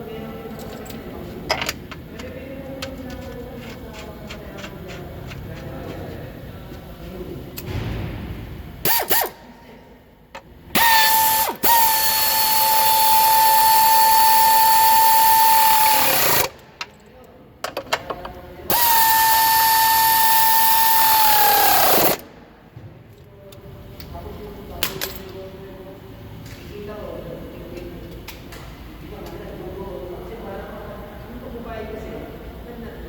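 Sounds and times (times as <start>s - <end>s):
power tool whining: 10.7s - 16.6s, 18.7s - 22.3s.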